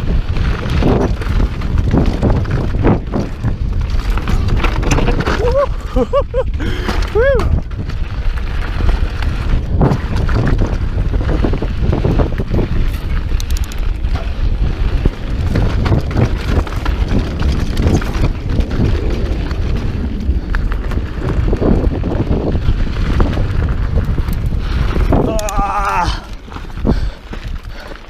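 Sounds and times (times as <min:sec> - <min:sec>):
wind buffeting microphone: 0:00.0 - 0:28.0
light rattles and clicks: 0:12.1 - 0:21.1.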